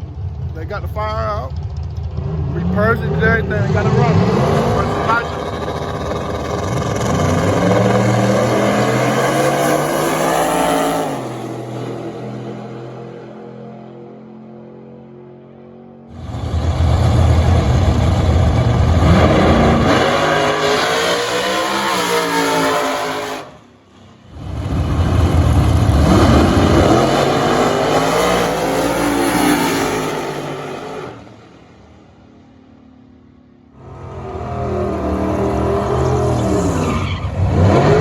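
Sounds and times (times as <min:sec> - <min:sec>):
drag car engines accelerating: 0:00.0 - 0:38.0.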